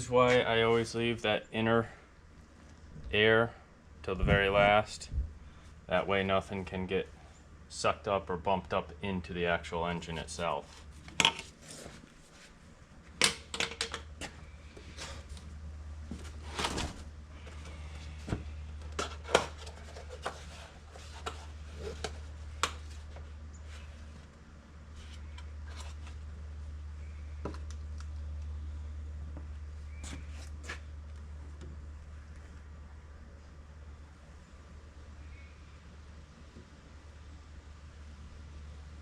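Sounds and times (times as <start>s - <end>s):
steady low hum: 0.0s - 39.0s
clicks and knocks of parts: 13.2s - 14.1s.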